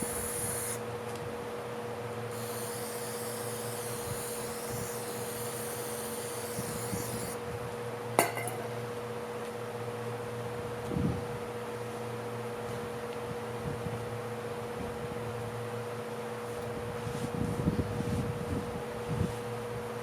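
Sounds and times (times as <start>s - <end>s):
aerosol spray hissing: 0.0s - 0.8s, 2.3s - 7.4s
workshop hum: 0.0s - 10.6s.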